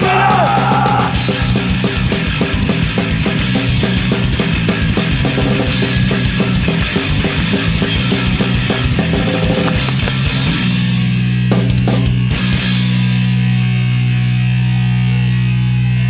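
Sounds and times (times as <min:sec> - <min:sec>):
drum kit beat with cymbals: 0:00.0 - 0:13.8
bass and guitar chords: 0:00.0 - 0:16.0.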